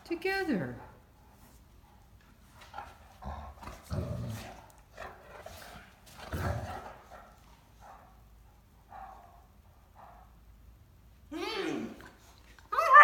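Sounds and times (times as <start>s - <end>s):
dogs play-wrestling: 0.7s - 10.4s
dog barking and grumbling: 11.3s - 13.0s.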